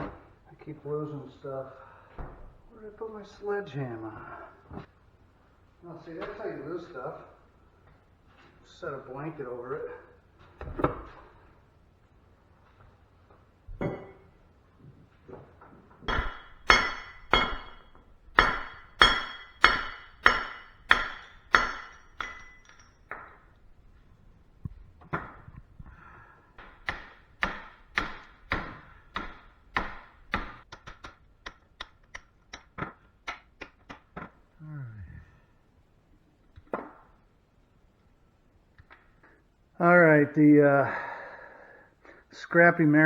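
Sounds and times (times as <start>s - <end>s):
sledgehammer striking metal: 16.1s - 23.3s.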